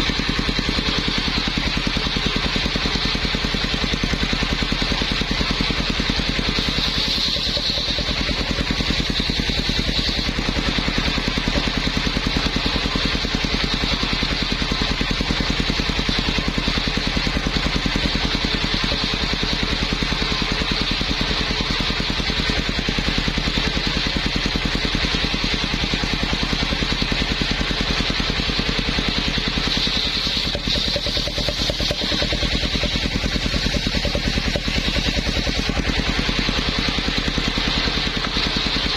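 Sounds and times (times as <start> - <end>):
circular saw engine beat: 0.0 - 38.9
high-pitched saw whine: 6.0 - 15.1, 29.0 - 38.9.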